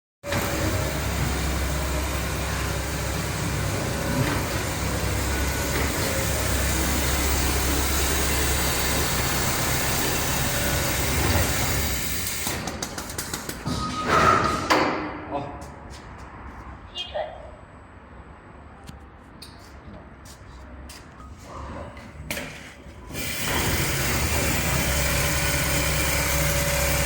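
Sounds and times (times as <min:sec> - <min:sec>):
sewing machine humming: 0:00.2 - 0:12.5, 0:23.2 - 0:27.0.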